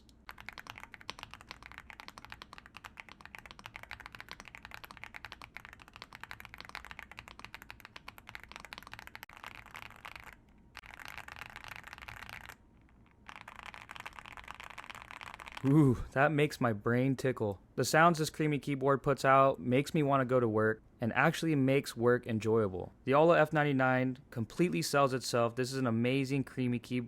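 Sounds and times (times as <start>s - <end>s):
fast typing on mechanical keyboard: 0.0s - 12.6s, 13.2s - 15.6s.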